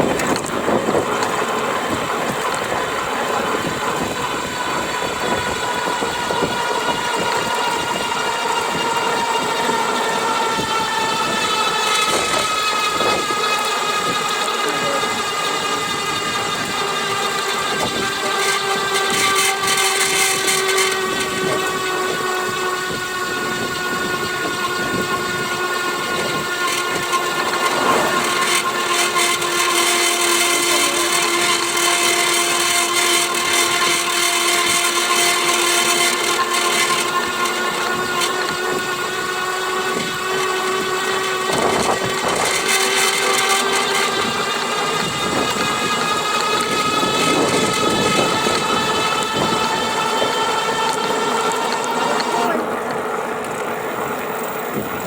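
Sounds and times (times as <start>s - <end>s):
electric motor whining: 0.0s - 55.0s
rattling noise: 23.8s - 53.8s.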